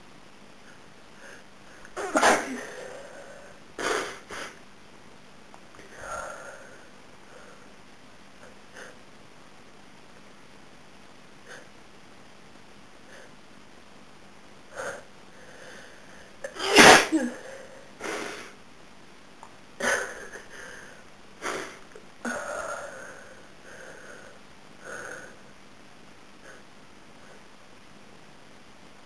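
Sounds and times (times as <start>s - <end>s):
breathing: 0.7s - 1.9s, 5.8s - 7.7s, 14.8s - 16.4s, 19.8s - 25.5s
woman sneezing: 2.0s - 2.9s, 16.5s - 17.5s.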